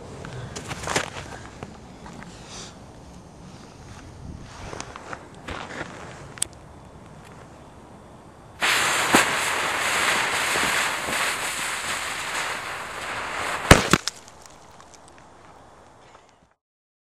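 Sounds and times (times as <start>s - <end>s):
fuse hissing: 8.6s - 14.0s
firecracker bang: 8.6s - 14.3s
sharp crack: 8.6s - 16.4s.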